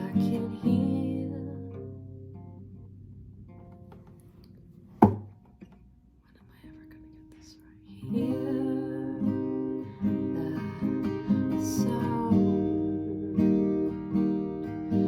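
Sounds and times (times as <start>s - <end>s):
acoustic guitar strumming chords: 0.0s - 4.3s, 8.0s - 15.0s.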